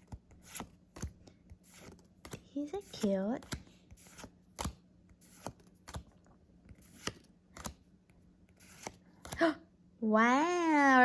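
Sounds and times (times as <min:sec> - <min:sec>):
cards snapping: 0:00.0 - 0:07.8, 0:08.6 - 0:09.4.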